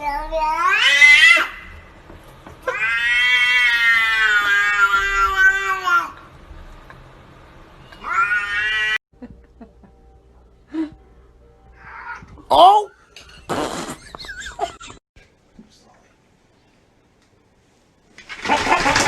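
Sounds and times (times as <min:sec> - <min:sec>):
cat yowling: 0:00.3 - 0:01.7, 0:02.7 - 0:06.2, 0:07.9 - 0:09.0, 0:11.7 - 0:13.0.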